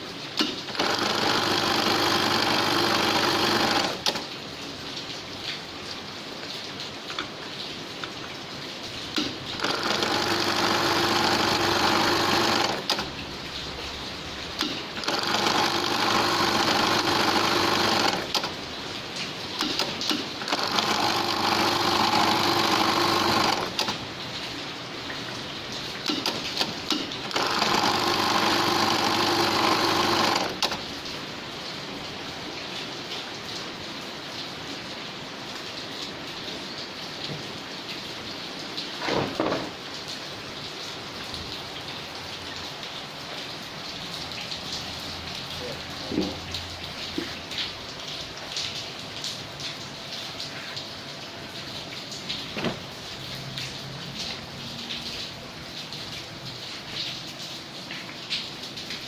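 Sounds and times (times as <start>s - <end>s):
industrial sewing machine stitching: 0.4s - 4.3s, 9.1s - 13.2s, 14.6s - 18.6s, 19.6s - 24.0s, 26.0s - 30.9s.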